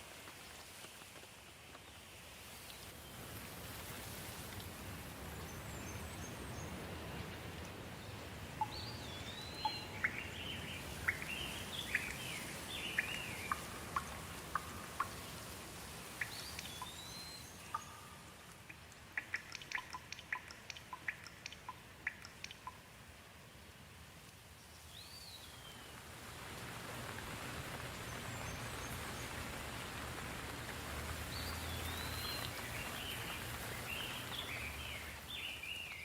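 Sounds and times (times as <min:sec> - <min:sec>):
steady rain: 0:00.0 - 0:36.0
close water drips: 0:08.5 - 0:23.2, 0:28.4 - 0:36.0
bird whistling: 0:09.4 - 0:13.7.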